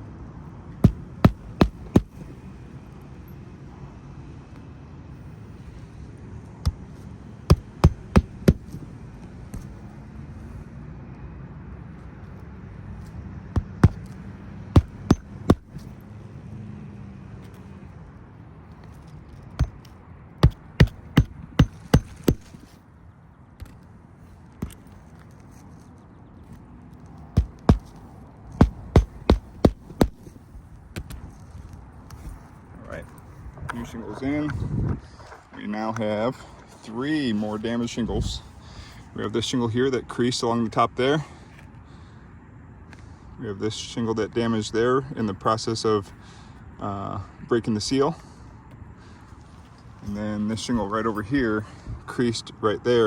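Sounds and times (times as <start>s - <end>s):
hammer striking roofing nails: 0.8s - 2.4s, 6.6s - 6.9s, 7.5s - 8.8s, 13.6s - 15.8s, 19.6s - 22.7s, 24.6s - 24.9s, 27.4s - 30.4s.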